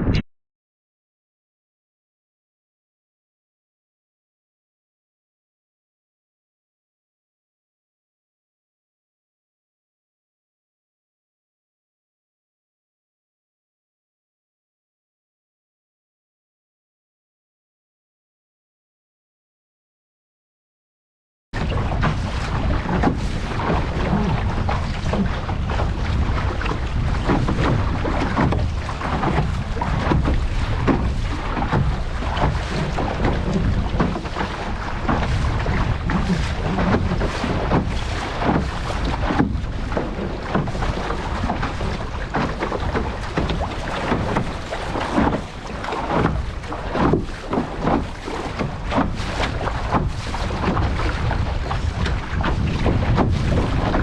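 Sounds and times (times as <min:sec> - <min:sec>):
water rushing and splashing: 0:21.6 - 0:54.0
wind buffeting microphone: 0:21.6 - 0:54.0.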